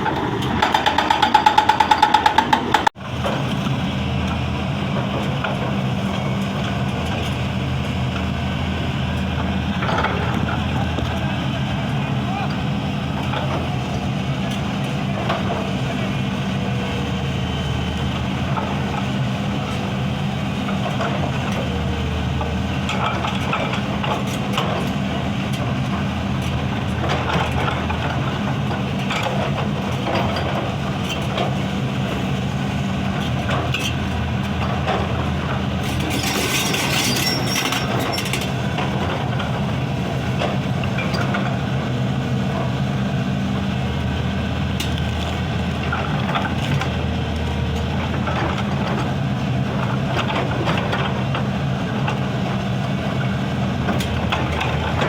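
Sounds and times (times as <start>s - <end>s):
diesel engine running: 0.0s - 55.0s
sharp knocks: 0.5s - 2.9s.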